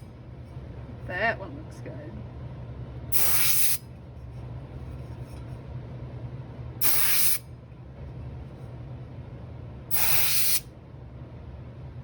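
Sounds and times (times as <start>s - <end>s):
steady low hum: 0.0s - 12.0s
airbrush spraying hiss: 3.1s - 3.8s, 6.8s - 7.4s, 9.9s - 10.6s.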